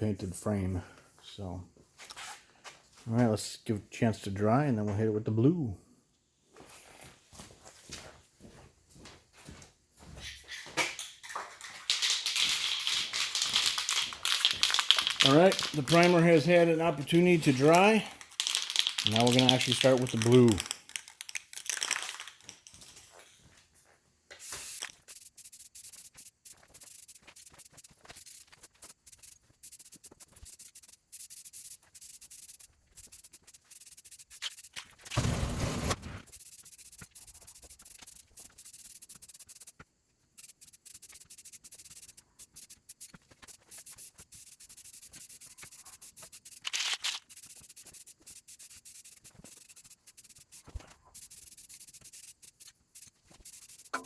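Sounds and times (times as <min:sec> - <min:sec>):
spray can hissing: 0:11.6 - 0:22.5, 0:24.4 - 0:39.8, 0:40.4 - 0:54.0.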